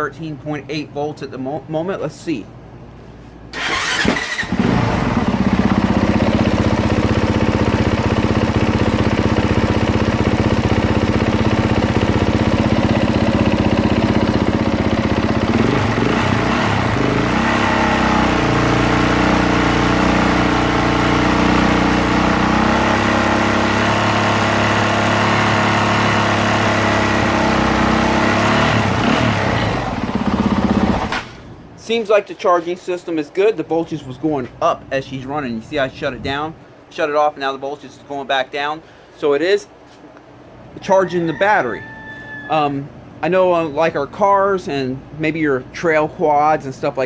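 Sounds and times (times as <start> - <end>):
motocross engine idling: 3.6 - 24.9, 26.3 - 31.1.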